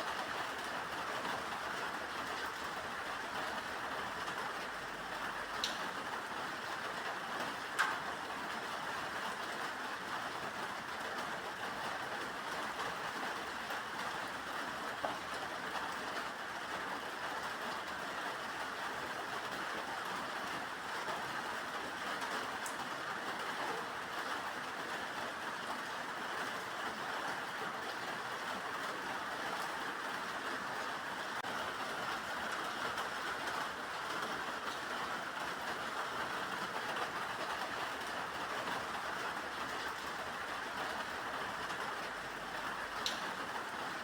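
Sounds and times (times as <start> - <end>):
steady rain hiss: 0.0 - 44.0
faint tick: 5.6 - 5.9, 7.8 - 8.0, 43.0 - 43.4.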